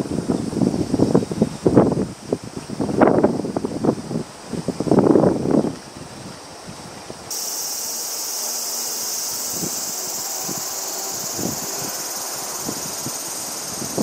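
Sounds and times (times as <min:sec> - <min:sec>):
cicadas buzzing: 0:07.3 - 0:14.0.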